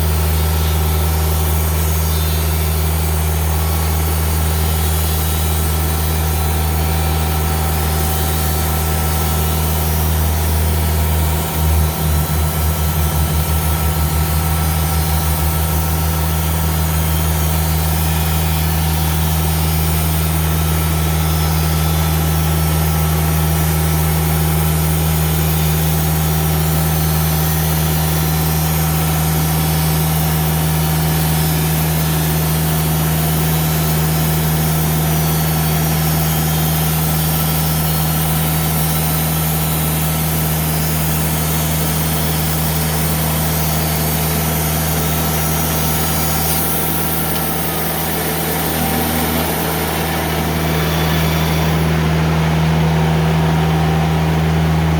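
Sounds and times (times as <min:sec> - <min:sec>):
diesel engine humming: 0:00.0 - 0:25.0, 0:42.8 - 0:54.9.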